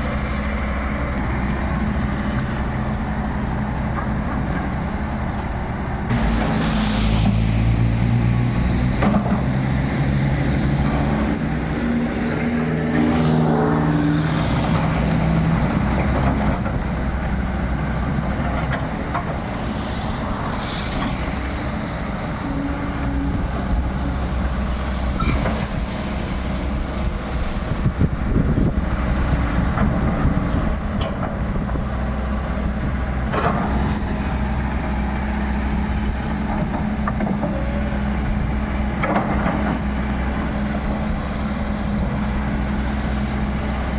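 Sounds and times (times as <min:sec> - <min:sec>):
excavator diesel engine running: 0:00.0 - 0:43.9.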